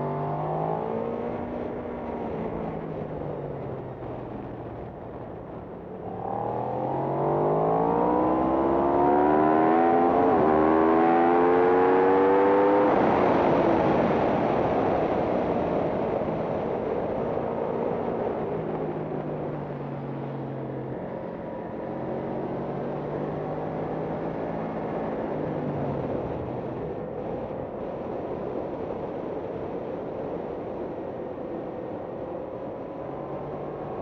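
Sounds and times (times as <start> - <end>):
racing motorcycle engine: 5.9 - 17.7.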